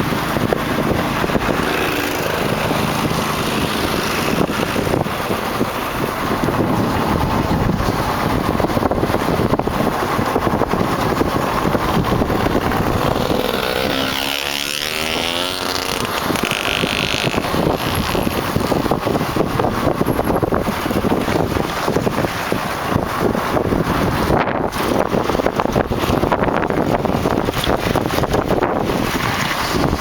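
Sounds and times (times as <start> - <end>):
vehicle passing: 0.0 - 18.6
tyre noise: 0.0 - 19.0
wind rushing on microphone: 0.0 - 30.0.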